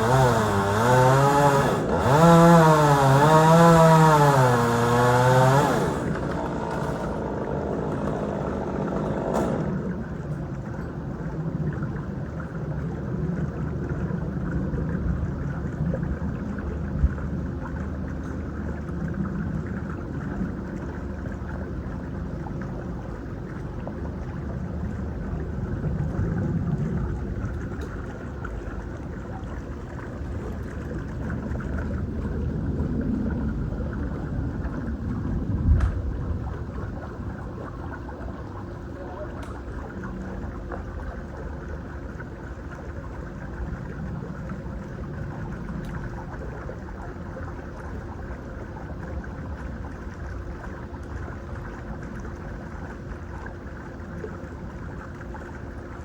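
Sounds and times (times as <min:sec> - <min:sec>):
low engine running: 0:00.0 - 0:11.6.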